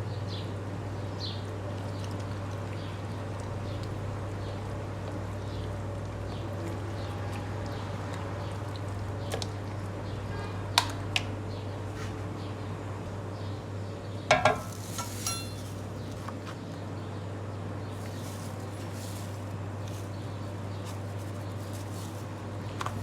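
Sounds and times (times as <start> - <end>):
dishes clattering with ringing: 14.3 - 15.8
utensils and dishes clinking: 14.3 - 16.0.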